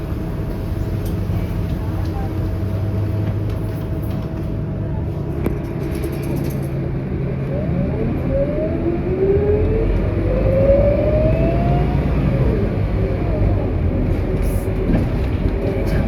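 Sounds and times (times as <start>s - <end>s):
bus engine rumble: 0.0s - 16.0s
rising drivetrain whine: 7.2s - 15.8s.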